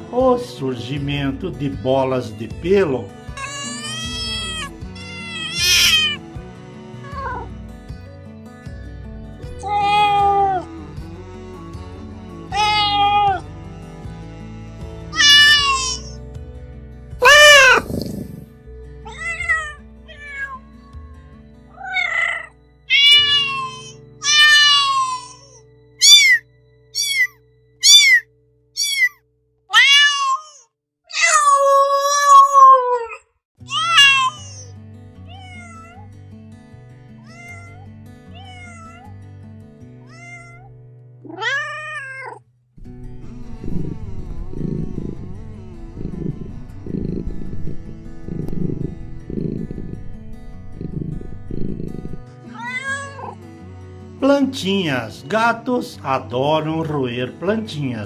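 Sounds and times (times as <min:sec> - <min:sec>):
background music: 0:00.0 - 0:29.0, 0:42.8 - 0:58.0
kitten meowing: 0:03.4 - 0:06.2, 0:07.0 - 0:07.5, 0:09.6 - 0:10.7, 0:12.5 - 0:13.4, 0:15.1 - 0:16.2, 0:17.2 - 0:18.4, 0:19.1 - 0:20.6, 0:21.7 - 0:26.4, 0:27.0 - 0:28.2, 0:28.8 - 0:34.7, 0:35.3 - 0:36.1, 0:37.2 - 0:37.8, 0:38.4 - 0:39.1, 0:40.1 - 0:40.7, 0:41.3 - 0:42.4, 0:43.7 - 0:50.0, 0:50.8 - 0:53.4.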